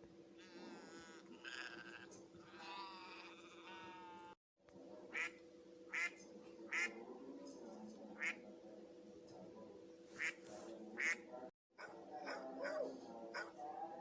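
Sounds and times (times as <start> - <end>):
faint steady hum: 0.0 - 11.5
sheep bleating: 0.4 - 4.4
duck quacking: 5.1 - 7.0, 8.2 - 8.4, 10.2 - 10.4, 11.0 - 11.2.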